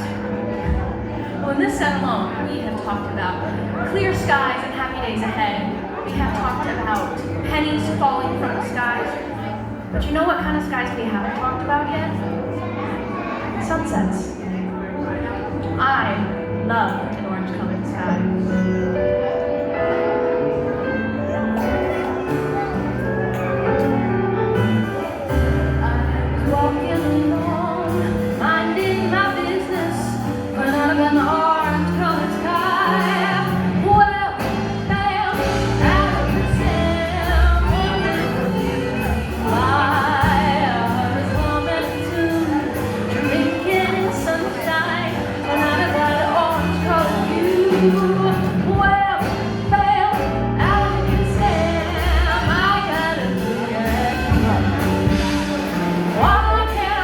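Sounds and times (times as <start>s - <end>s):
live jazz band: 0.0s - 57.0s
person singing: 25.7s - 57.0s.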